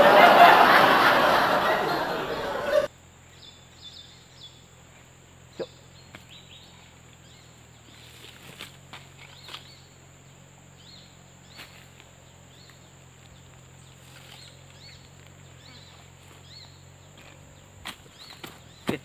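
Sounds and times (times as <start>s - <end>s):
rise-and-fall chirps: 0.0s - 2.9s
insect drone: 0.0s - 19.0s.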